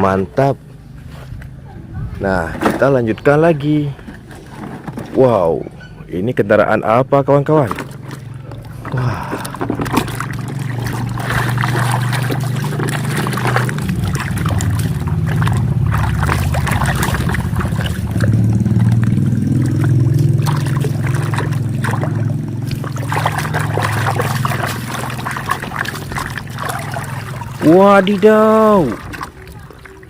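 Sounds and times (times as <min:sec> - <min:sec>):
low hum: 0:07.7 - 0:30.0
water trickling and pouring: 0:07.8 - 0:30.0.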